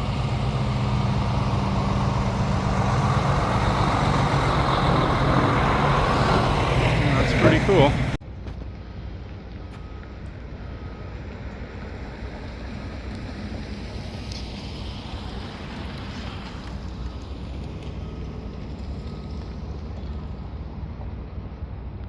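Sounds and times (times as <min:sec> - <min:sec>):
vehicle passing hiss: 0:00.0 - 0:08.2
low rumble of traffic: 0:00.0 - 0:22.0.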